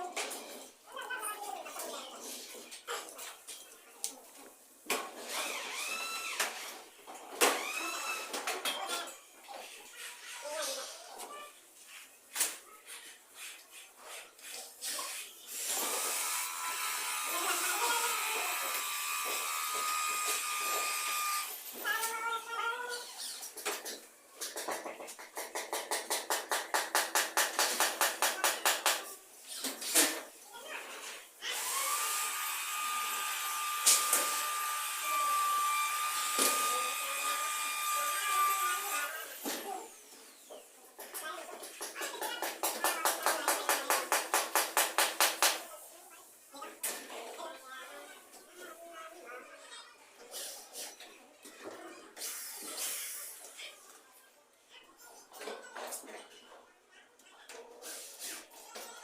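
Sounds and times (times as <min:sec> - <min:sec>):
power tool motor whining: 0:05.3 - 0:06.7, 0:07.5 - 0:08.3, 0:15.5 - 0:21.7, 0:31.5 - 0:39.4.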